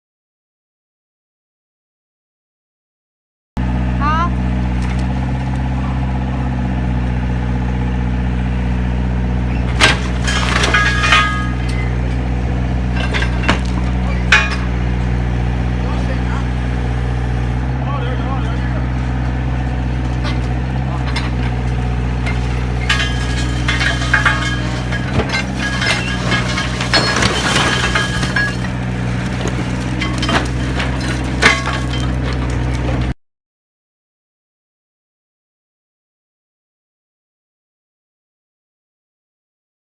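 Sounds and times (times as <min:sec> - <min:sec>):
diesel engine running: 0:03.6 - 0:33.2
concrete cracking and crunching: 0:04.5 - 0:17.8, 0:18.4 - 0:33.2.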